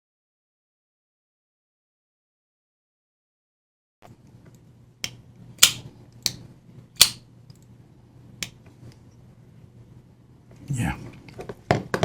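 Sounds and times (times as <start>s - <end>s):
sharp metallic clicks: 5.0s - 6.4s, 7.0s - 7.2s.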